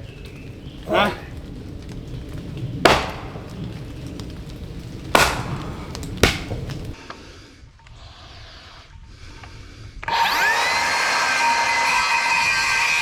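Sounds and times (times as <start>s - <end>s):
knocks on wood: 2.3s - 4.2s, 5.1s - 7.0s.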